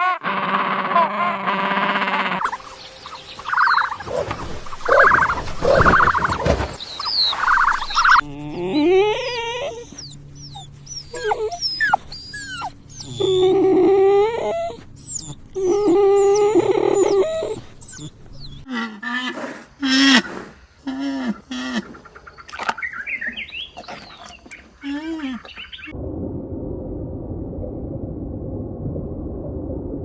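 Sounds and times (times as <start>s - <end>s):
high gliding animal whines: 2.2s - 18.7s
loud rough animal calls: 3.6s - 22.1s.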